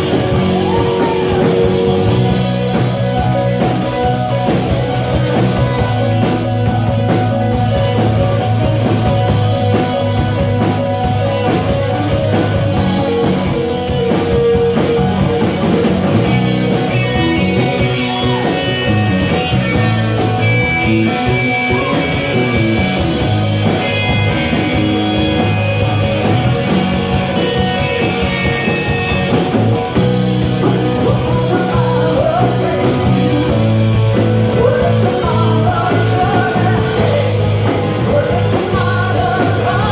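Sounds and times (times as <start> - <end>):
rock band music: 0.0 - 39.9.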